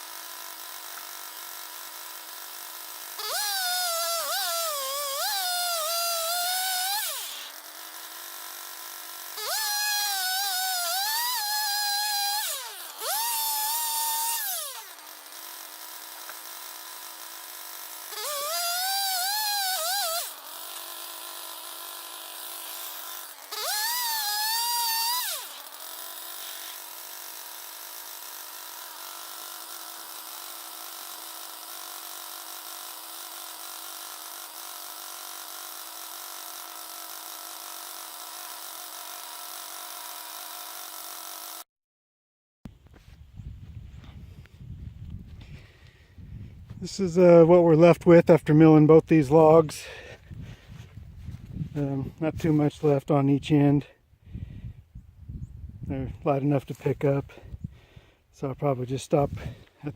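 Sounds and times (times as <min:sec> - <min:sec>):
sawmill engine revving: 0:00.0 - 0:41.6
circular blade cutting log: 0:00.0 - 0:41.7.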